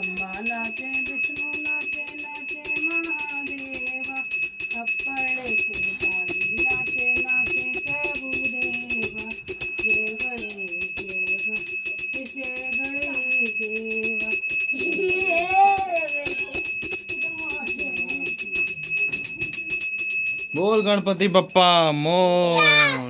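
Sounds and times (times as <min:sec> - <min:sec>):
person singing a hymn: 0:00.0 - 0:16.6
hand bell ringing rapidly: 0:00.0 - 0:21.0.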